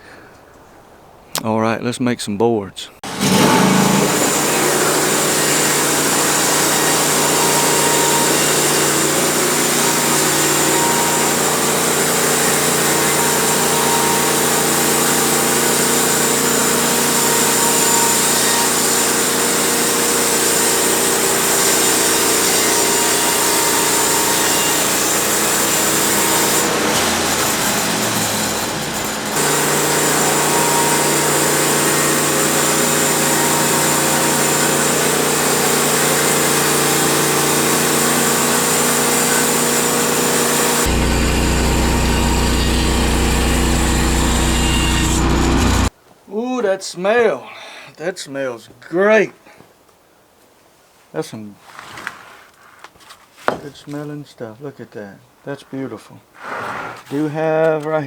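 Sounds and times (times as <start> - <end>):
saw cutting through log: 3.0 - 45.9
sawmill engine running: 3.0 - 45.9.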